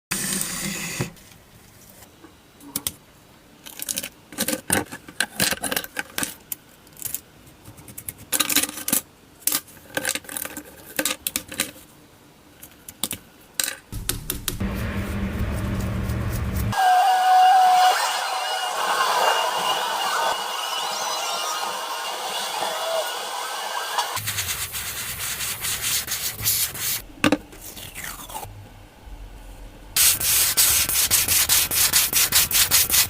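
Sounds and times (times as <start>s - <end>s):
steady low drone: 14.0s - 16.8s.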